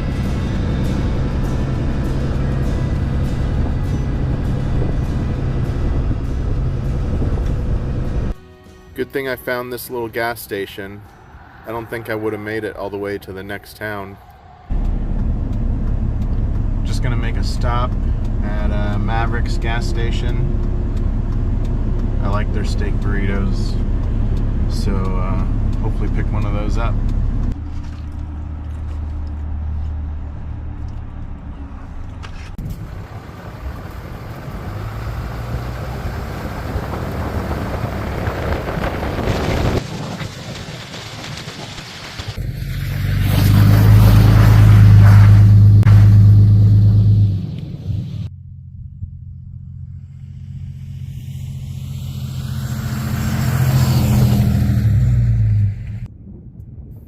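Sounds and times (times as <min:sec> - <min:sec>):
truck engine humming: 0:00.0 - 0:56.1
road and wind noise: 0:00.0 - 0:57.0
faint rising tone: 0:10.5 - 0:22.6, 0:42.4 - 0:56.1.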